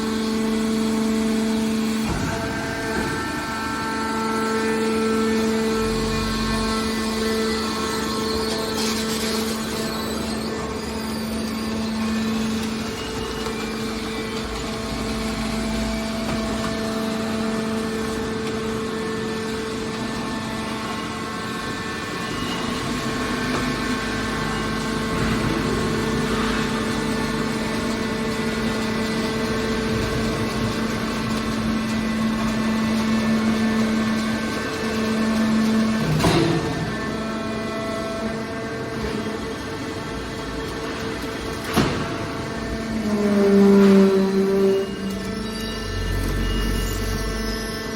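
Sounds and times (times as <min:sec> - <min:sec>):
hydraulic power unit humming: 0:00.0 - 0:47.9.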